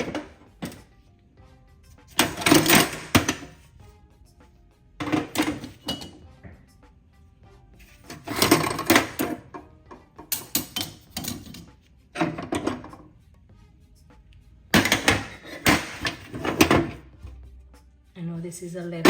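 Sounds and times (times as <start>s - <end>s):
metal hand tools clattering: 2.2s - 3.5s, 10.2s - 13.0s.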